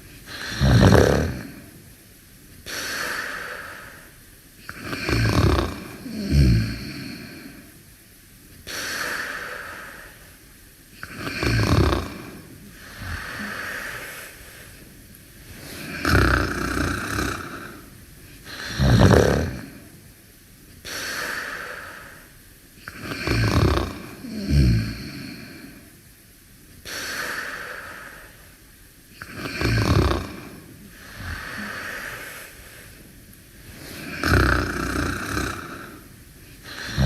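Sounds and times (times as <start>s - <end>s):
low rattling snores: 0.0s - 1.8s, 4.7s - 7.7s, 11.0s - 14.3s, 15.4s - 20.0s, 22.8s - 25.9s, 29.2s - 32.6s, 33.6s - 37.0s
breathy hissing breaths: 0.0s - 37.0s.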